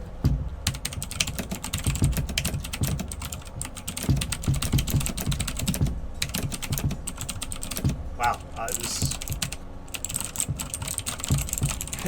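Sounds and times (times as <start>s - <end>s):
mechanical keyboard typing: 0.6s - 7.9s, 8.7s - 12.0s.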